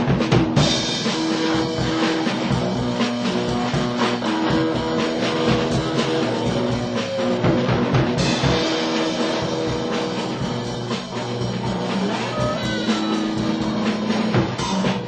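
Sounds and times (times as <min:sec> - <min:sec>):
drum kit beat: 0:00.0 - 0:15.0
guitar: 0:00.0 - 0:15.0
synthesizer notes: 0:10.3 - 0:14.9.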